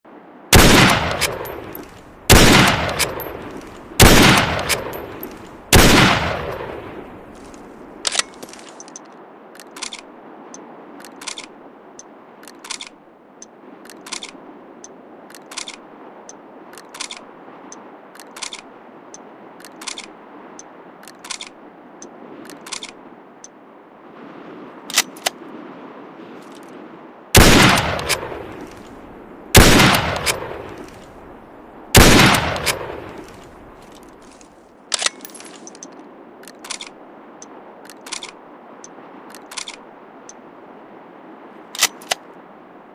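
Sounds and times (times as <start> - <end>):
rifle shots echoing: 0.5 - 7.5, 27.4 - 31.2, 32.0 - 33.9.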